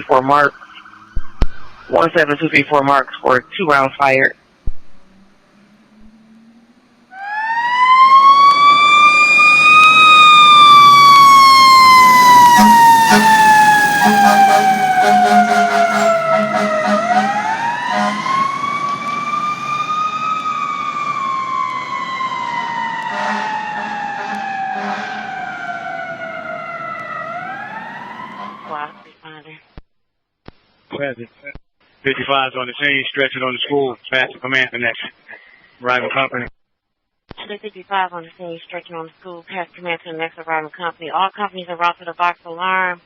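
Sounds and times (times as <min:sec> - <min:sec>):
fire truck siren wailing: 0:00.0 - 0:02.0, 0:05.2 - 0:29.1.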